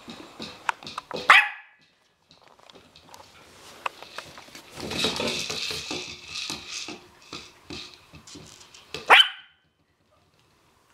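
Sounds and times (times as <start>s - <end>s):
puppies scratching and clicking: 0.0s - 9.1s
puppy yelp: 1.3s - 1.7s, 9.1s - 9.6s.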